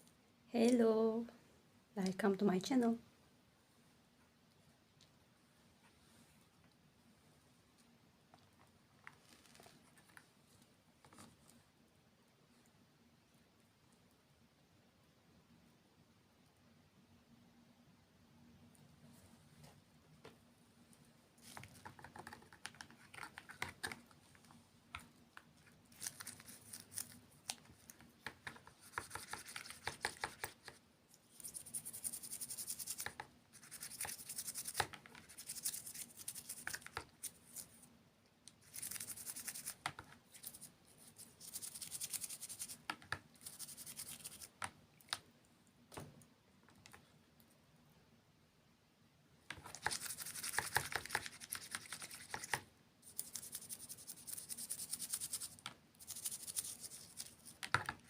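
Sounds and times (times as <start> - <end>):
close crinkling and scratching: 8.4 - 11.6, 21.4 - 37.9, 49.5 - 58.0.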